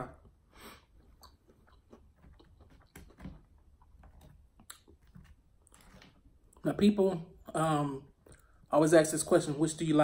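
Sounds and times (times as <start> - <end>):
mouth chewing and smacking: 0.8 - 6.6.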